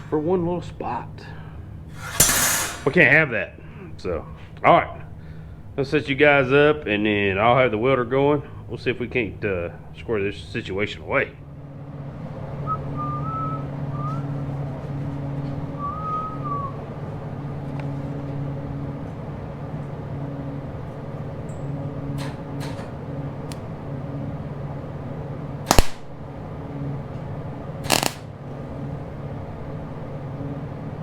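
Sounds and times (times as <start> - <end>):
electrical hum of shop equipment: 0.0 - 31.0
loud metal clank: 1.9 - 3.2
short whistled notes: 12.6 - 14.4.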